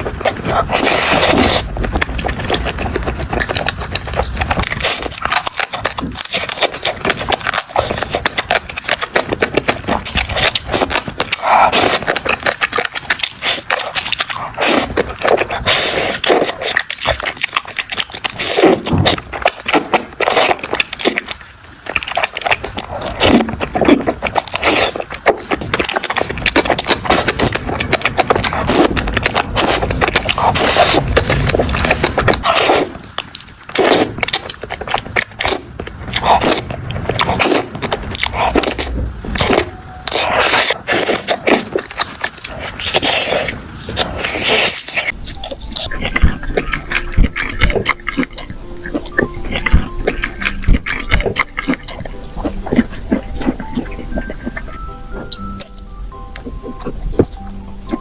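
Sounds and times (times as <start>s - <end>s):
chewing and crunching: 0.0s - 58.0s
mouth clicks: 0.0s - 58.0s.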